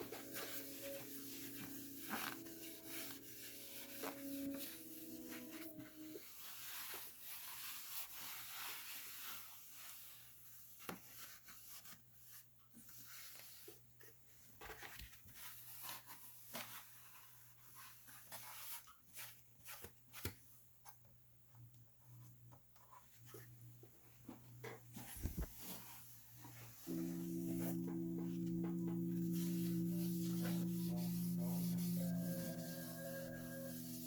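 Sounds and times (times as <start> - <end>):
rustling: 0.0 - 10.2.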